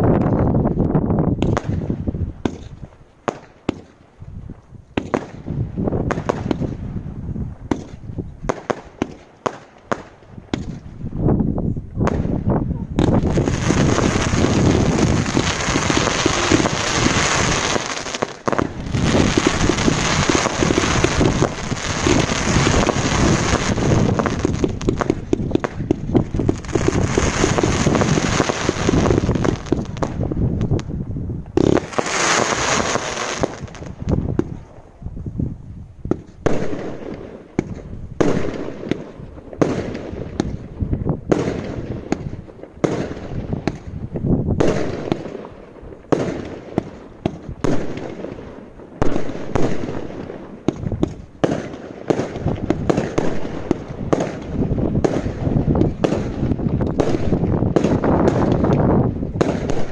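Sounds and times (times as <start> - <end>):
fireworks bangs: 0.0 - 11.1, 11.9 - 34.8, 36.0 - 59.9
fireworks hissing: 13.0 - 30.0, 31.6 - 34.1.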